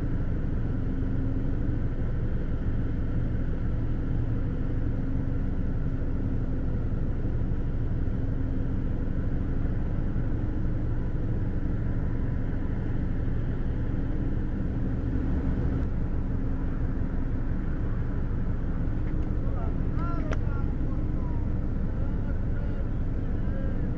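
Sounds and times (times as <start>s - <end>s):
diesel engine rumble: 0.0s - 23.9s.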